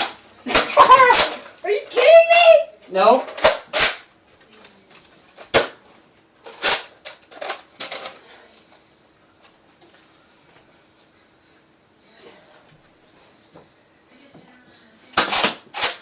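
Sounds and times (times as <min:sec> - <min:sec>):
toy blaster shots: 0:03.4 - 0:04.0, 0:15.2 - 0:16.0.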